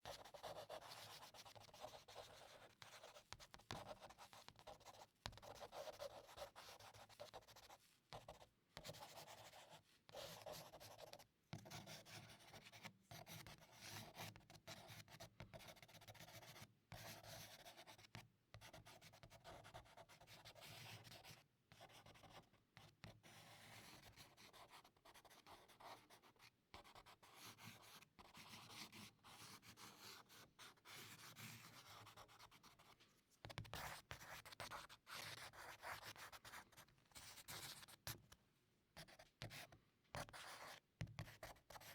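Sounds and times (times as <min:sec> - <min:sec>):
charcoal scratching on paper: 0:00.0 - 0:11.2.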